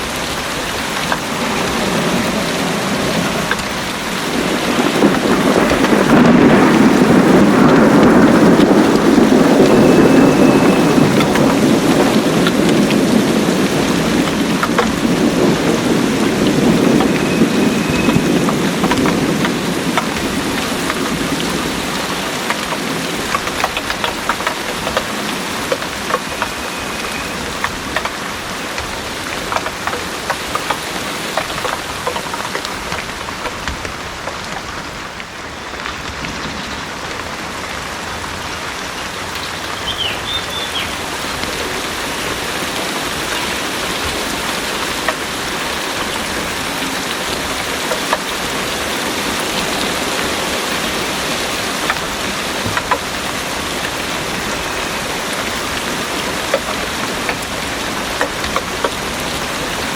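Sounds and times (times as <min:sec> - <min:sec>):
low thunder rumble: 0:00.0 - 0:30.2
heavy rain falling: 0:00.0 - 0:59.9
raindrops striking close by: 0:00.0 - 0:59.9.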